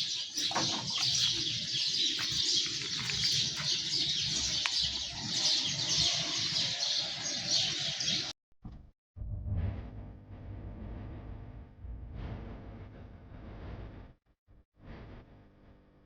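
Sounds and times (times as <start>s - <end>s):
birds chirping chorus: 0.0s - 8.3s.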